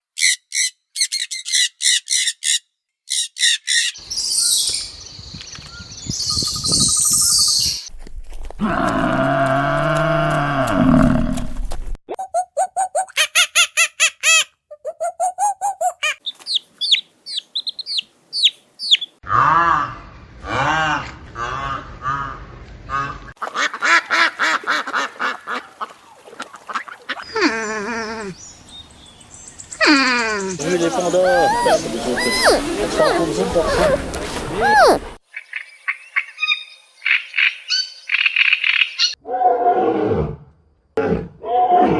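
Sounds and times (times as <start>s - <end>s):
high bird chirping: 0.2s - 7.9s, 14.8s - 19.2s, 28.3s - 34.0s, 34.6s - 38.2s
sharp bird calls: 0.2s - 7.9s, 14.8s - 19.2s, 29.6s - 39.2s
outdoor background noise: 12.9s - 41.9s
ducks quacking: 22.9s - 27.2s, 30.8s - 35.2s
chicken clucking: 31.0s - 35.2s.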